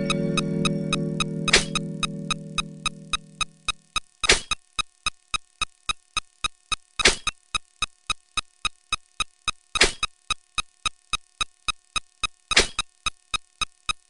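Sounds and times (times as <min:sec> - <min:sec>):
electronic blip beeps: 0:00.0 - 0:04.0.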